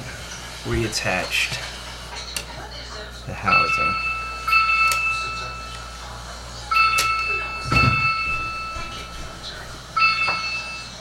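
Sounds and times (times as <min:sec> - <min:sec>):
phone-like ringing tone: 0:06.7 - 0:11.0.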